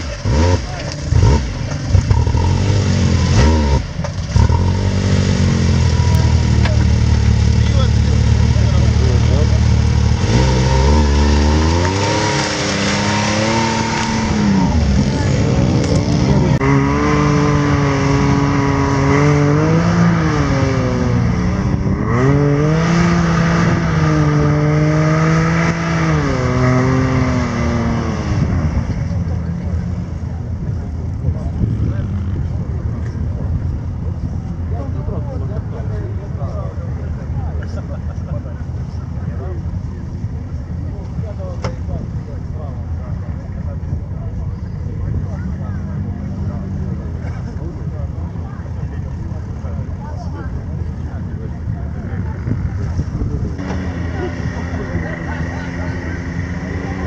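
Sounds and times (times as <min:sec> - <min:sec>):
vehicle engine revving: 0:00.0 - 0:42.0, 0:44.9 - 0:57.0.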